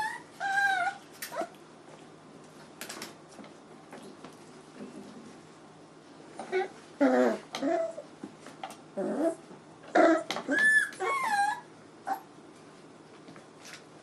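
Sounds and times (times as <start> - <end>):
puppies whining and yelping: 0.0 - 1.6, 6.4 - 8.1, 9.0 - 12.3.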